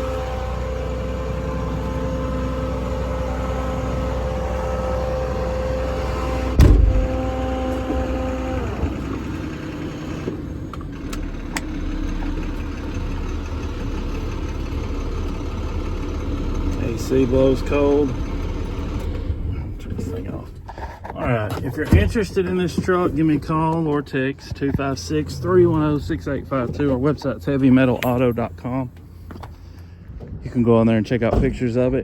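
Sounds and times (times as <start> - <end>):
steady whine: 0.0 - 30.3
diesel truck engine idling: 0.0 - 32.0
heavy thump: 6.5 - 7.2.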